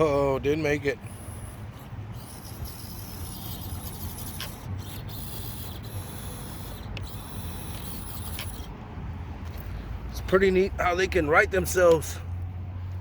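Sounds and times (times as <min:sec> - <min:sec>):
small electric motor whirring: 0:00.0 - 0:08.8
steady outdoor rumble: 0:00.0 - 0:13.0.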